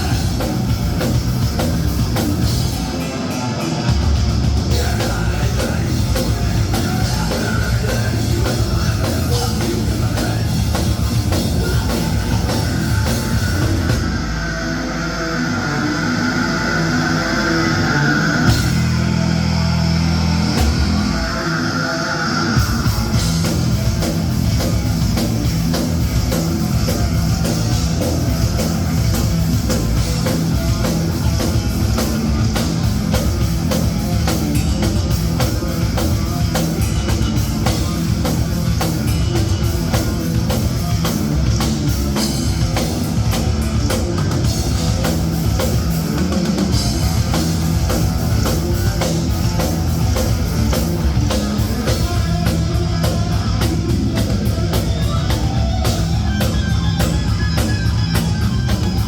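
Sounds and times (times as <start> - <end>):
drums: 0.0 - 59.0
rock band playing live: 0.0 - 59.0.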